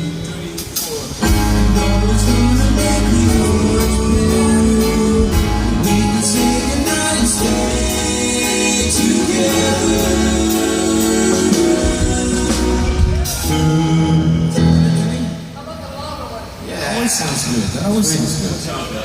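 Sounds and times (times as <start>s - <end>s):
live pop band playing: 0.0s - 16.7s
group vocal harmonies: 1.2s - 15.6s.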